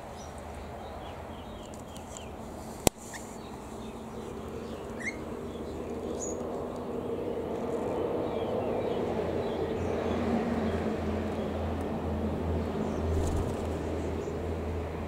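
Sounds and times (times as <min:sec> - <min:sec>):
birds chirping: 0:03.0 - 0:10.8.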